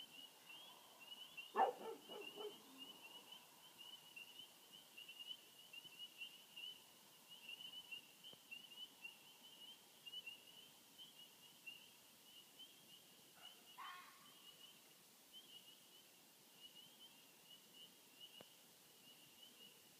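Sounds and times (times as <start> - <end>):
animal call: 1.6 - 2.9.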